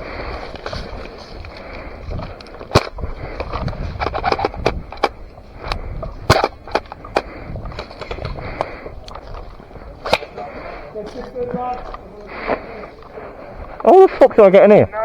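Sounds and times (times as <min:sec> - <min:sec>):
low rustling rumble: 0:00.0 - 0:13.8
sharp clicks and knocks: 0:00.5 - 0:10.3.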